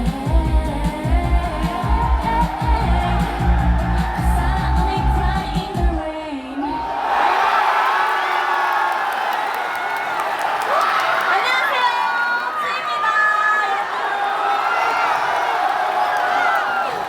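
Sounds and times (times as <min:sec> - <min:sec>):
woman singing over a beat: 0:00.0 - 0:06.6
crowd cheering: 0:00.2 - 0:17.0.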